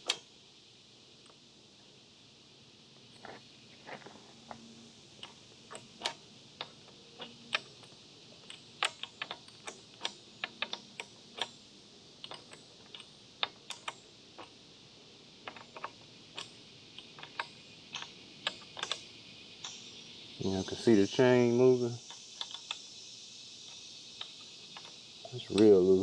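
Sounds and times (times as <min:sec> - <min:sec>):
drive chain clicking: 0:05.2 - 0:11.6.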